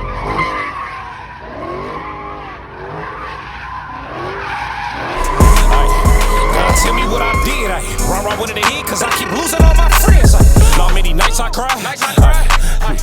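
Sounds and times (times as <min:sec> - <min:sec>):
hip-hop music with heavy bass: 0:00.0 - 0:00.8, 0:05.0 - 0:13.0
car tyres squealing: 0:00.0 - 0:13.0.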